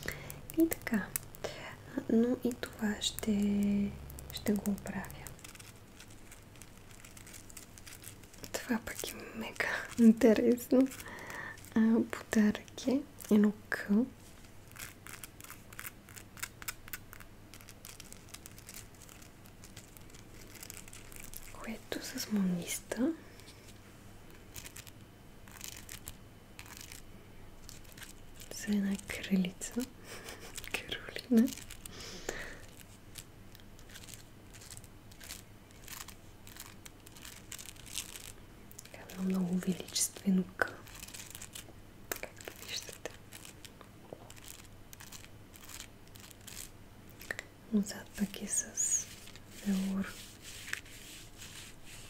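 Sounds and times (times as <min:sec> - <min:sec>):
taps and scratches on beaded ornament: 0:02.5 - 0:13.5, 0:14.4 - 0:22.8, 0:24.3 - 0:32.0, 0:32.6 - 0:52.0
beads clicking and tapping: 0:14.7 - 0:21.6, 0:30.5 - 0:47.5.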